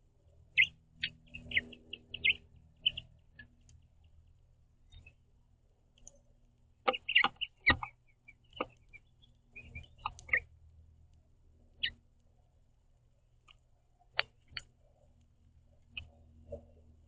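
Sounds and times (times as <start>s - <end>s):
finches chirping: 0.5s - 3.6s, 6.9s - 10.5s, 11.8s - 12.0s.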